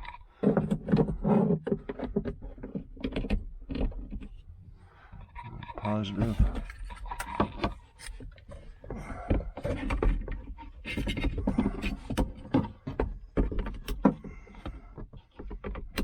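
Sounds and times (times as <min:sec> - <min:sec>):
cable clamps clicking and rattling: 0:05.3 - 0:08.5.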